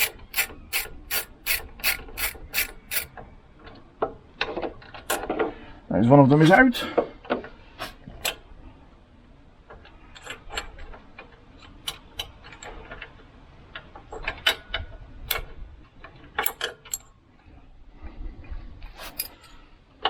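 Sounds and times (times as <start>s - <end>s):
spanner clicking on metal bolts: 0.0s - 3.1s, 16.4s - 17.1s, 19.0s - 19.6s.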